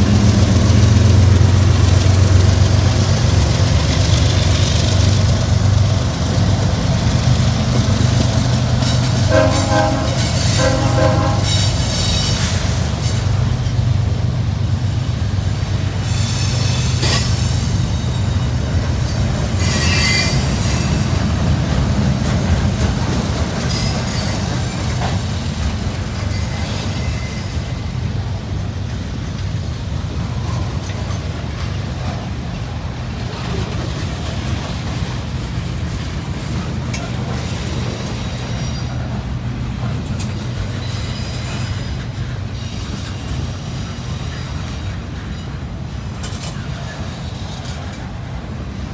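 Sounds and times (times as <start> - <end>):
train wheels rumbling on rails: 0.0 - 48.9
high-pitched wheel squeals: 16.0 - 21.2, 40.7 - 45.0.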